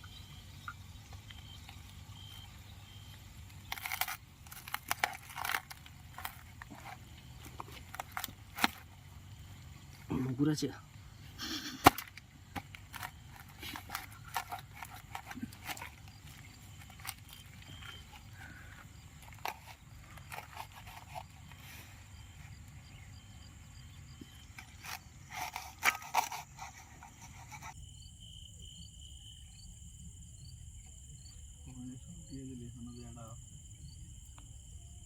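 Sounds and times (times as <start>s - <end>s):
cricket chorus chirping: 0.0s - 35.0s.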